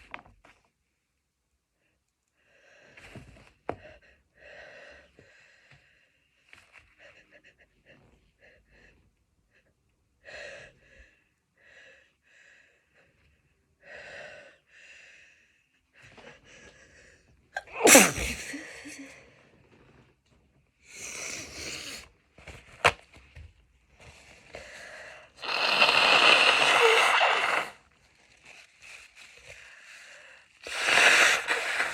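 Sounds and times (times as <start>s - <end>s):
woman sneezing loudly: 17.6s - 19.1s, 25.4s - 27.8s
breathy sniffles: 20.9s - 22.1s, 24.6s - 27.8s, 29.6s - 31.9s.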